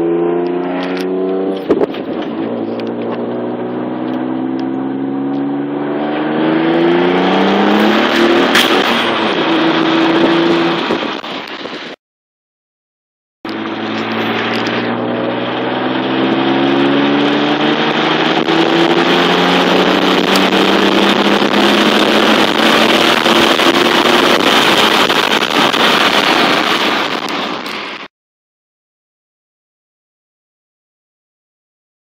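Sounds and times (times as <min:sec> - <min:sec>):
turbo engine accelerating: 0:00.0 - 0:12.0, 0:13.5 - 0:28.1.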